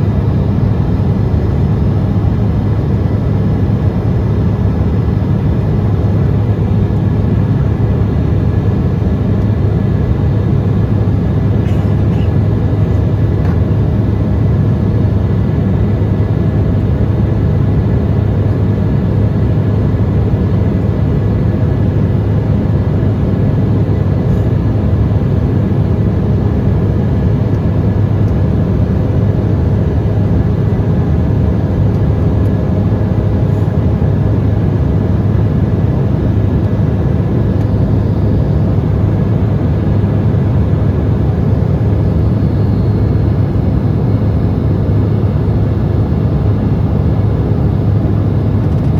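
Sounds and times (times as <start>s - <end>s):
airliner cabin hum: 0.0s - 48.9s.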